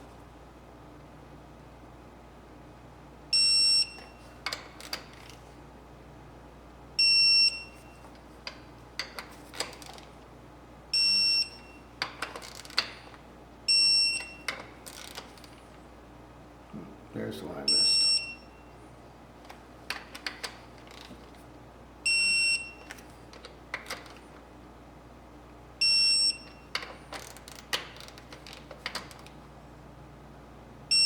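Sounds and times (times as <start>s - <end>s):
torque wrench beeping: 3.3s - 5.0s, 7.0s - 8.1s, 11.0s - 13.0s, 13.7s - 15.2s, 17.7s - 18.7s, 22.1s - 23.0s, 25.8s - 28.1s
wrench clicking on bolts: 26.8s - 29.3s.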